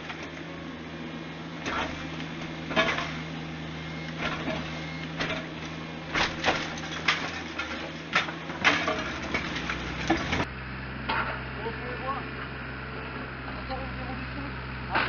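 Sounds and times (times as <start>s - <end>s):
excavator engine running: 0.0s - 15.0s
rubble and wood cracking: 1.6s - 10.5s.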